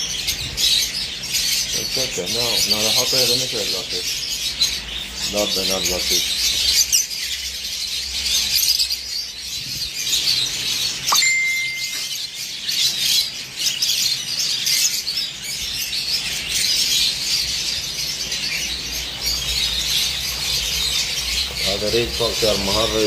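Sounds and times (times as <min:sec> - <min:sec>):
caged birds chirping: 0:00.0 - 0:23.0
short high tone: 0:11.1 - 0:12.2.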